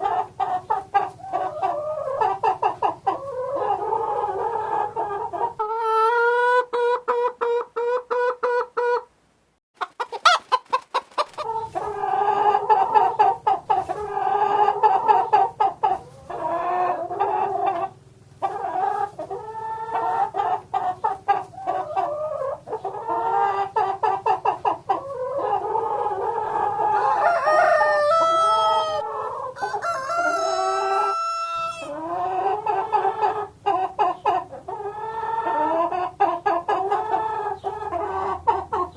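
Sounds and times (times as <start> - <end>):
hens clucking: 0.0 - 9.1, 9.8 - 38.9
hens drawn-out calls: 25.0 - 33.6.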